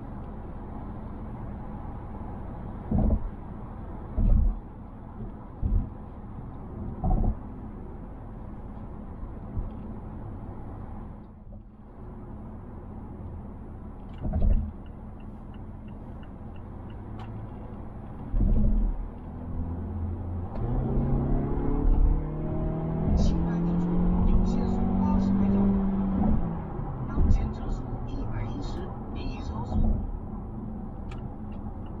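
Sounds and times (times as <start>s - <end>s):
car engine accelerating: 0.0s - 32.0s
road and tyre rumble: 0.0s - 32.0s
heavy low thumps: 6.9s - 7.4s
faint regular ticking: 14.0s - 17.8s.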